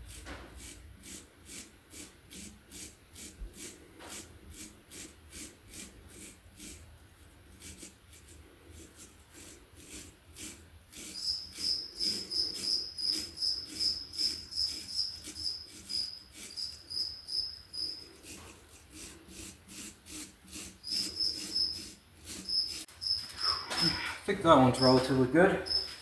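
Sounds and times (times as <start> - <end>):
rhythmic scraping strokes: 7.6 - 26.0
cricket chirping: 11.1 - 18.0, 20.8 - 21.8, 22.4 - 24.2, 25.6 - 26.0.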